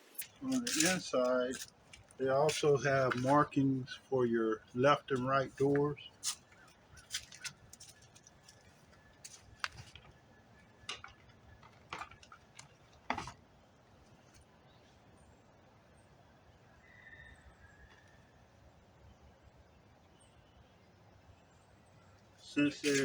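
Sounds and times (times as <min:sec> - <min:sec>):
plastic covers clicking: 0:09.2 - 0:13.4.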